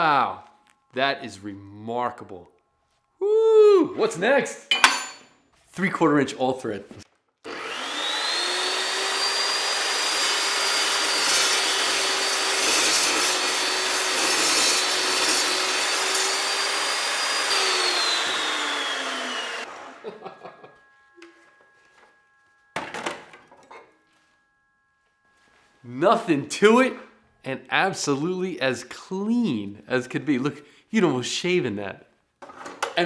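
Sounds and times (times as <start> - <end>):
chop saw cutting metal rod: 7.5 - 20.6.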